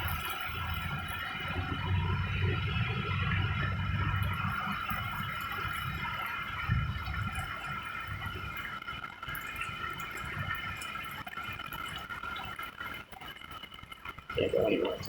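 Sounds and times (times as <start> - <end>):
gusting wind buffeting: 0.0 - 8.6
rain pattering on a car: 0.0 - 15.0.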